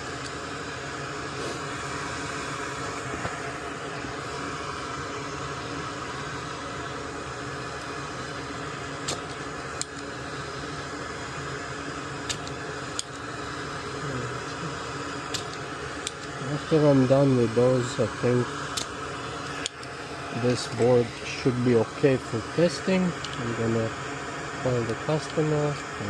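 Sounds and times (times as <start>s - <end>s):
fan-like whir: 0.0s - 26.0s.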